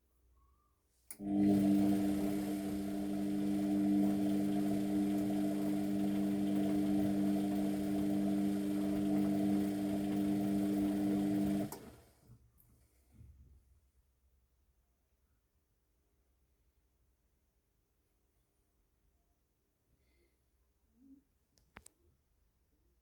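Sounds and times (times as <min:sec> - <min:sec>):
washing machine humming: 0:01.1 - 0:12.3.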